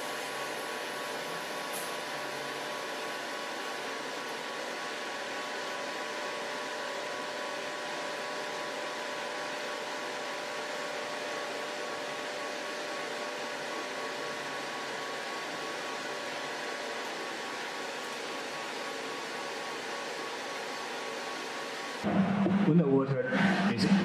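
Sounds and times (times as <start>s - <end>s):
pump whirring hum: 0.0s - 24.0s.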